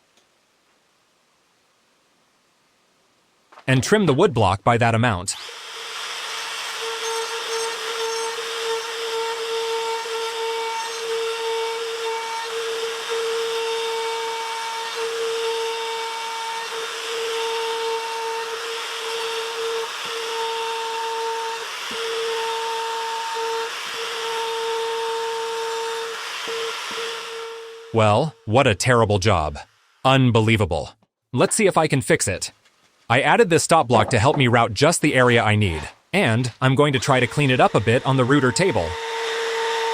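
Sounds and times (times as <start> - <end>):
hiss of wood cutting: 5.4 - 28.0, 36.8 - 39.9
wood router motor whine: 5.4 - 28.0, 36.9 - 39.9.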